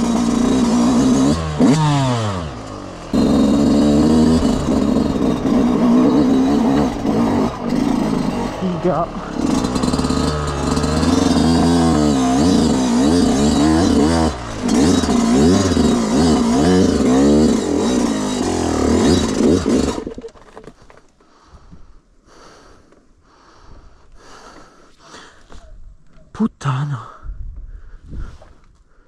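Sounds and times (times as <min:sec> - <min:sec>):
two-stroke engine revving: 0:00.0 - 0:20.3.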